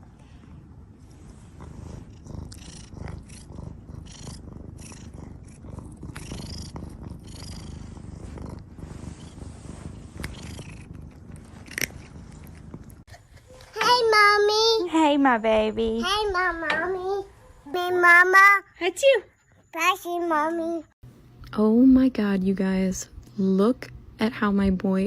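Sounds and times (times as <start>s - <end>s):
cat purring: 0.0s - 13.4s.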